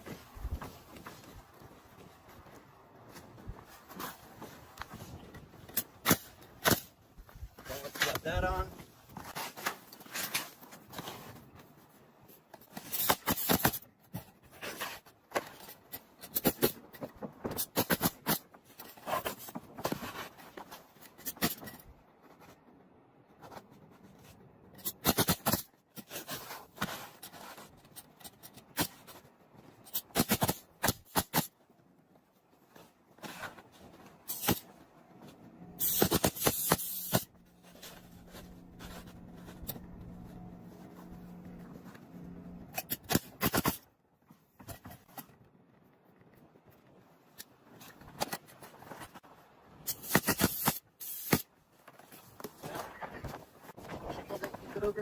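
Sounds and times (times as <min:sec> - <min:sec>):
nail gun firing: 0:35.8 - 0:37.3, 0:49.9 - 0:51.4.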